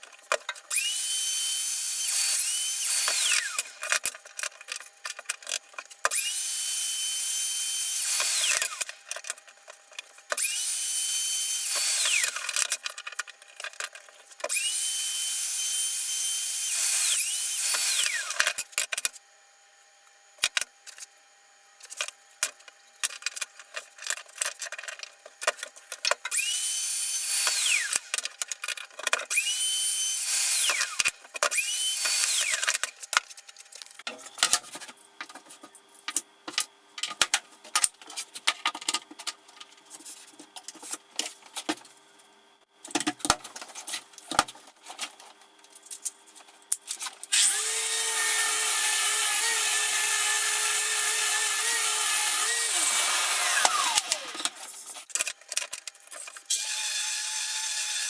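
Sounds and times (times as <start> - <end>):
loud power tool running: 0.7 - 3.8, 6.1 - 8.9, 10.4 - 12.6, 14.5 - 18.5, 26.3 - 28.0, 29.3 - 32.9, 47.3 - 54.6
power drill spinning up: 0.7 - 3.8, 6.1 - 9.0, 10.4 - 12.6, 14.5 - 18.5, 26.3 - 28.1, 29.3 - 32.9, 47.3 - 54.6, 56.5 - 58.0
clicks and knocks of handling: 53.6 - 56.5.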